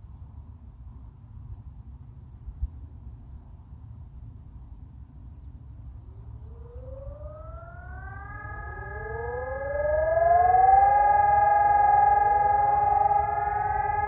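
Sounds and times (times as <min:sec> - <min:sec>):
sirens sounding: 0:06.1 - 0:14.0.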